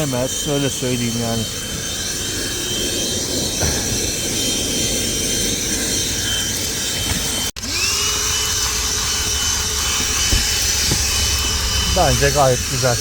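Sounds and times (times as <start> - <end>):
handheld vacuum motor whine: 0.0 - 13.0
air rushing through nozzle: 8.6 - 13.0.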